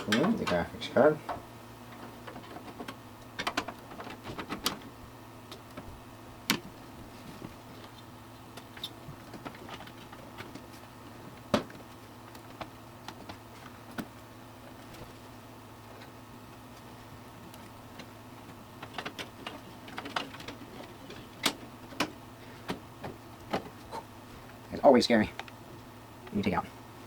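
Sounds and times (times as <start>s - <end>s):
computer case clicks and knocks: 1.3s - 4.9s, 11.4s - 14.1s, 18.0s - 23.8s.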